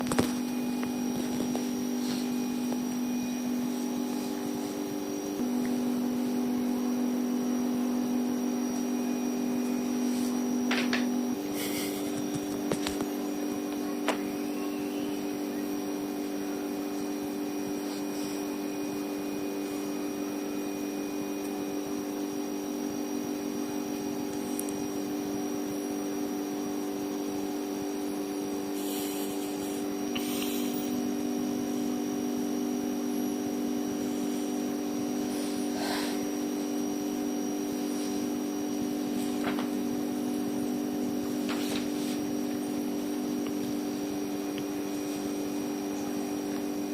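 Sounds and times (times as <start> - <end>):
faint rustles and clicks: 0.0 - 5.0, 10.0 - 13.9, 41.3 - 43.8
steady mechanical hum: 0.0 - 46.9.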